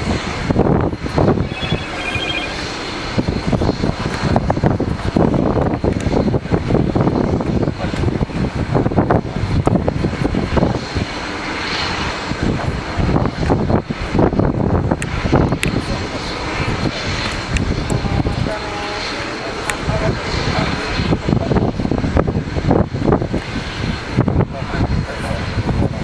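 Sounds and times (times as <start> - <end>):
jet engines rumbling: 0.0 - 26.0.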